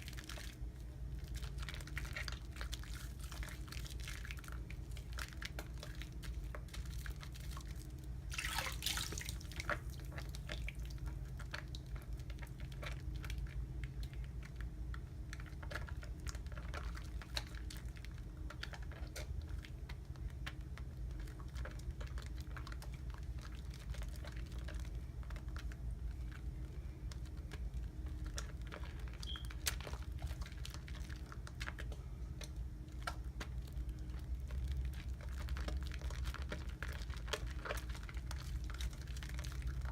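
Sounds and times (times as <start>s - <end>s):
soap suds crackling and squishing: 0.0s - 39.9s
water dripping: 8.3s - 11.1s, 29.2s - 29.4s.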